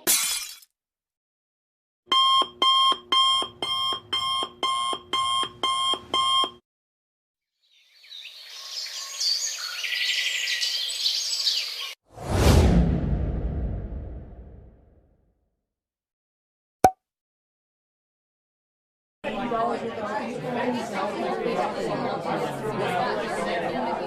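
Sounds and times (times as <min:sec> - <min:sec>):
alarm clock beeping: 0:02.1 - 0:06.6
birds chirping: 0:07.7 - 0:12.0.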